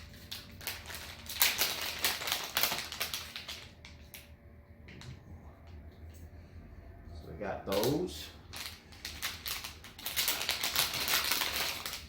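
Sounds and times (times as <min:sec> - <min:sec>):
plastic packaging clicking and crackling: 0:00.0 - 0:04.3, 0:07.7 - 0:12.0.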